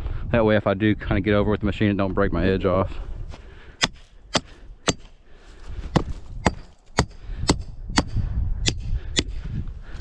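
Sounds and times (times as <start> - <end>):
hammer striking stakes: 3.8 - 5.2, 5.9 - 9.4.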